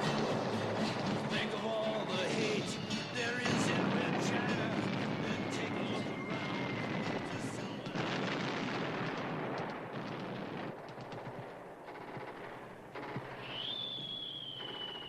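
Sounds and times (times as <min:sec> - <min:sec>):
machine-gun fire: 0:03.4 - 0:13.5
high whistle-like tone: 0:13.4 - 0:15.0.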